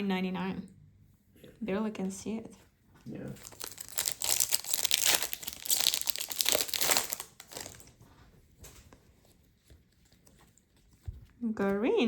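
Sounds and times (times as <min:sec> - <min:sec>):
cards rustling: 0:03.3 - 0:08.0
wrapper crinkling: 0:03.3 - 0:08.0.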